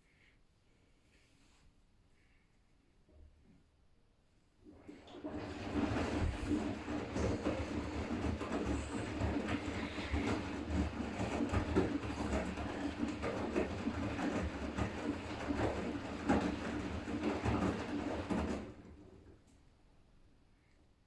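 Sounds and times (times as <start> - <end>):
laundry and water sloshing: 4.7 - 19.3
washing machine drum motor hum: 4.7 - 19.4.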